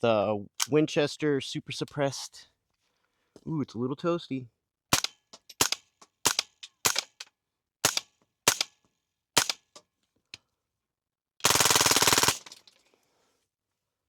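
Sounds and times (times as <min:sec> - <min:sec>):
suppressed rifle shots: 0:04.9 - 0:07.2, 0:07.8 - 0:08.7, 0:09.4 - 0:09.6
rapid rattling burst: 0:05.0 - 0:07.2, 0:07.8 - 0:08.7, 0:09.4 - 0:09.6, 0:11.4 - 0:12.6.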